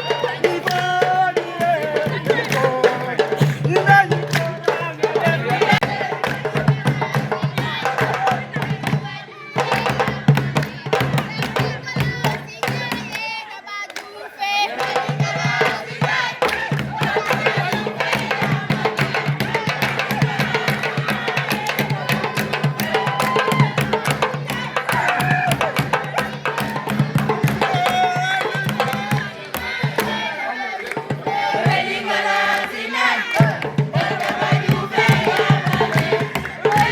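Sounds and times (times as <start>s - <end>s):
hand drums: 0.0s - 13.2s, 14.8s - 30.3s, 30.9s - 36.9s
fast percussion strikes: 0.0s - 13.3s, 14.7s - 36.9s
group of voices chanting: 0.0s - 36.9s.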